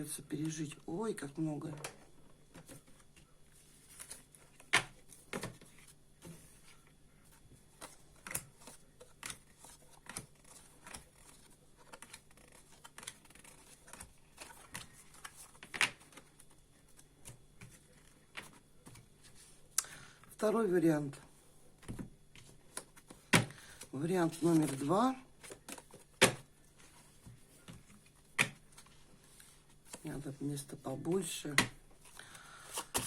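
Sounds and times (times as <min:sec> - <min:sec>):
cards being shuffled: 0:07.6 - 0:19.6.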